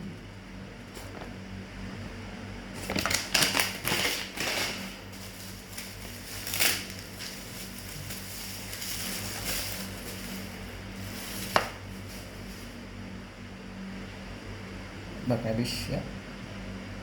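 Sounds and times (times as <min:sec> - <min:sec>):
low electrical hum: 0:00.0 - 0:17.0
packaging crinkling and rustling: 0:02.7 - 0:12.8.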